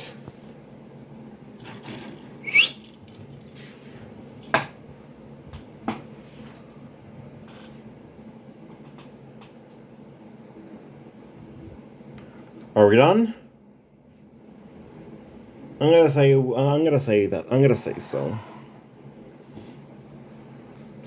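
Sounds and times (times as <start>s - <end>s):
brief rising squeak: 2.4s - 2.9s.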